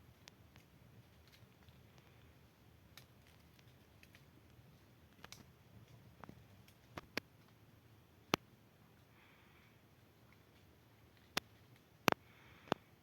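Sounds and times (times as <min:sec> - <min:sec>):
faint clicks and taps: 0:03.0 - 0:07.6, 0:10.3 - 0:12.9.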